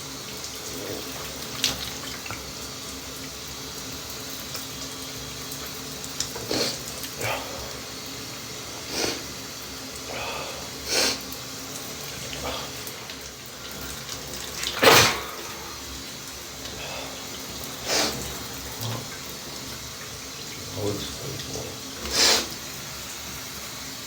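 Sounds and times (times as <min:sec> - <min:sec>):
shower water hissing: 0:00.0 - 0:24.0
man sneezing: 0:14.8 - 0:15.5.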